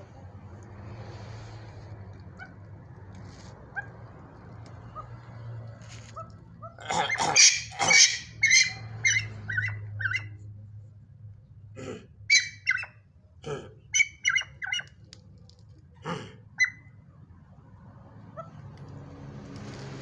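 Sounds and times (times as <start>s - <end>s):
coughing: 6.8s - 8.3s, 11.8s - 12.3s, 13.4s - 13.9s, 16.0s - 16.5s
bird giving sharp high calls: 6.9s - 10.4s, 12.3s - 13.0s, 13.9s - 14.9s.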